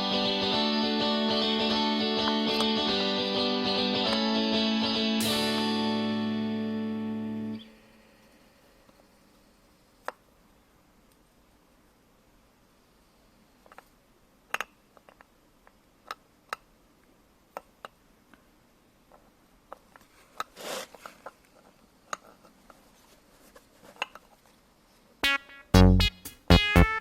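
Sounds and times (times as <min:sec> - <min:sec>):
brief scraping: 0:20.5 - 0:21.2.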